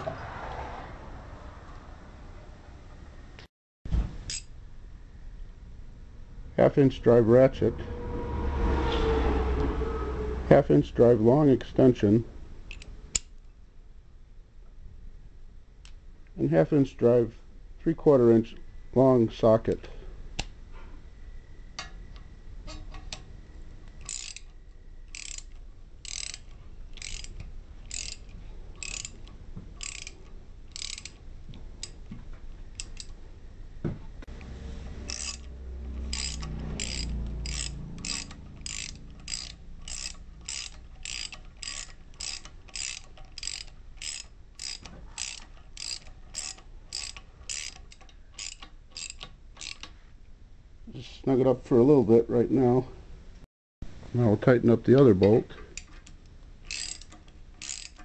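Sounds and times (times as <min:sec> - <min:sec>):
low rumble: 0:04.9 - 0:11.3
ratchet clicking: 0:12.7 - 0:13.4, 0:23.9 - 0:32.0, 0:32.7 - 0:33.2, 0:35.1 - 0:49.9, 0:55.8 - 0:58.0.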